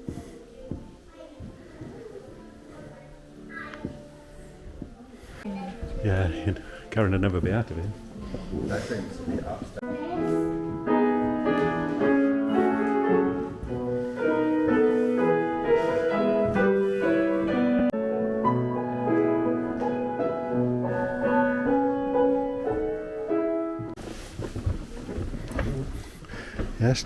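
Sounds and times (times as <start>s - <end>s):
piano melody: 2.0s - 24.2s.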